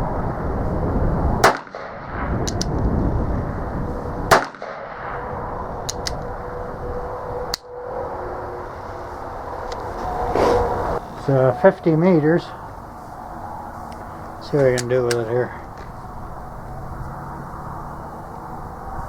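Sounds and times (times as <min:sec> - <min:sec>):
revolver gunshots: 0:01.4 - 0:02.5, 0:04.3 - 0:05.3.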